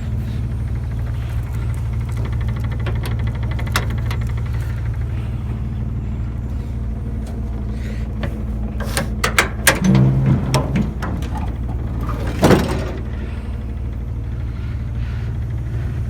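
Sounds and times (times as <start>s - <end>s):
truck engine rumbling: 0.0s - 16.0s
sharp clicks and knocks: 1.4s - 4.7s, 6.5s - 13.4s.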